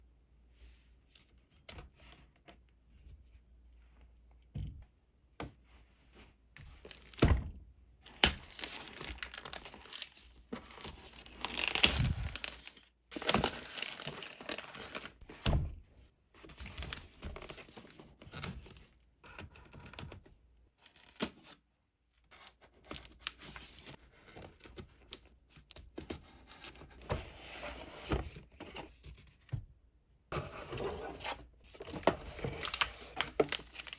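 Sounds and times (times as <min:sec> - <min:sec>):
packaging crinkling and tearing: 0:08.1 - 0:15.2, 0:31.8 - 0:33.9.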